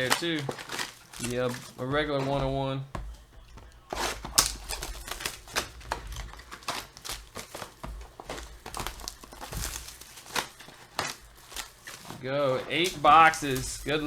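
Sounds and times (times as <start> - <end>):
faint rustling: 0.0 - 14.0.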